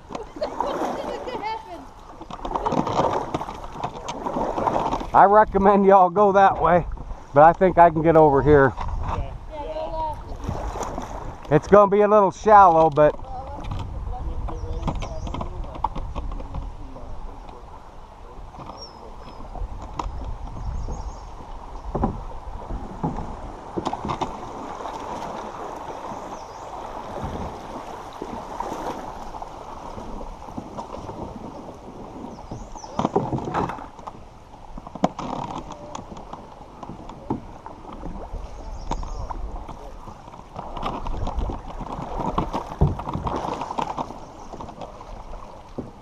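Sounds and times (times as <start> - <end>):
knocks against canoe: 2.1 - 5.2, 12.6 - 17.6, 21.8 - 46.0
creek water rushing: 16.7 - 46.0.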